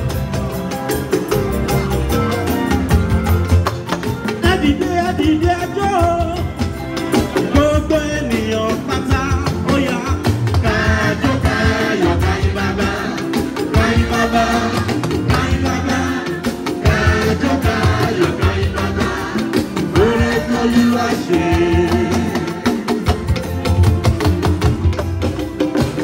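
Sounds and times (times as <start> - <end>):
person singing: 7.3 - 22.9.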